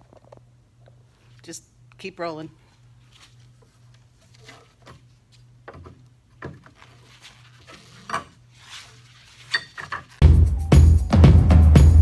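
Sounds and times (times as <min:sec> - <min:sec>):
loud music with drum beat: 0:10.2 - 0:12.0.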